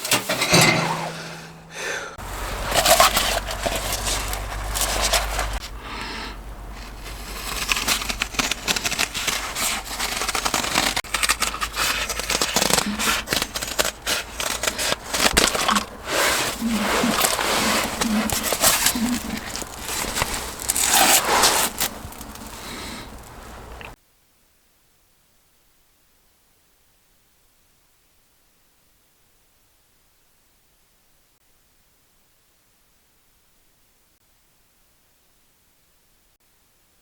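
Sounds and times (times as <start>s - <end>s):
objects rustling and clicking: 2.2s - 24.0s.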